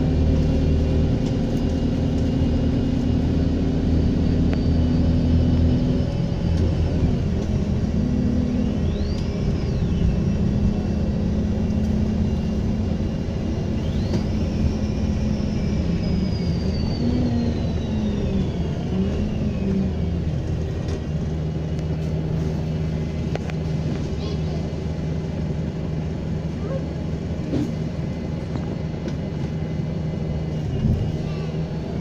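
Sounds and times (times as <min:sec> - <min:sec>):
bus diesel engine running: 0:00.0 - 0:32.0
turbocharger whistle: 0:08.4 - 0:10.6, 0:13.7 - 0:19.7.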